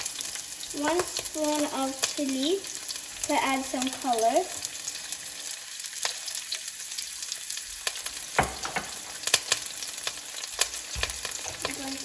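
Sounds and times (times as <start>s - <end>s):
food sizzling in frying pan: 0.0s - 12.0s.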